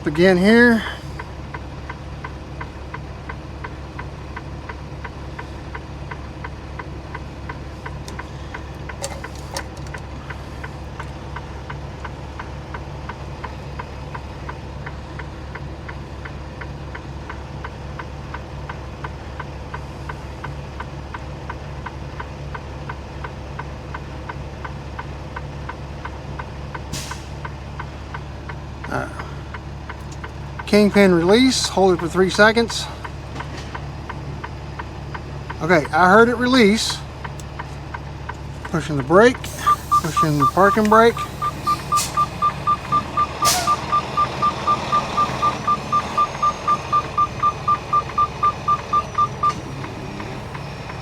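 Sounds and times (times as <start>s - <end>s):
diesel truck engine idling: 0.0s - 51.0s
short air hiss: 39.4s - 42.6s, 43.4s - 43.8s.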